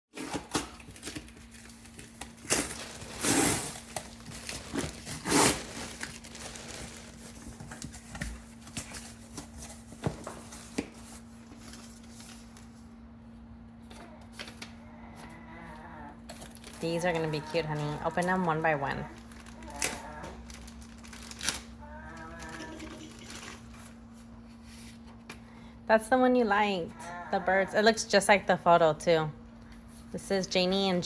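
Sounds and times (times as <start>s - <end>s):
paper or plastic tearing: 0.2s - 8.0s, 16.3s - 23.8s.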